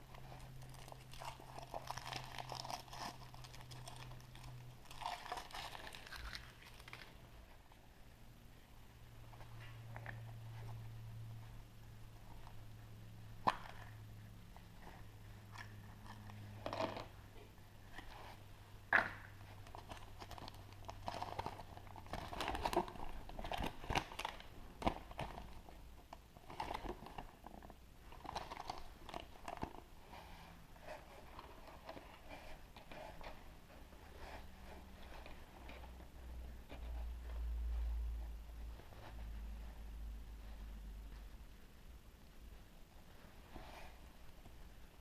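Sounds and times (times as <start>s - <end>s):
wrapper crinkling and egg cracking: 0.2s - 7.2s, 19.7s - 25.6s.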